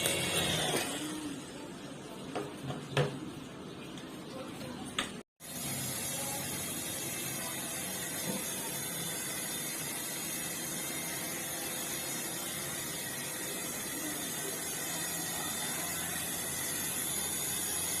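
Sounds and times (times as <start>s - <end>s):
toy helicopter motor whirring: 5.4s - 18.0s.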